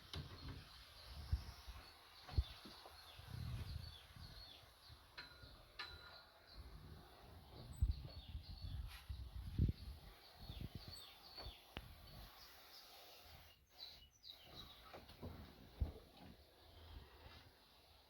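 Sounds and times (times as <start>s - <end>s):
small birds chirping: 0.0s - 16.9s
wind rumbling on microphone: 0.2s - 4.6s, 6.5s - 12.3s.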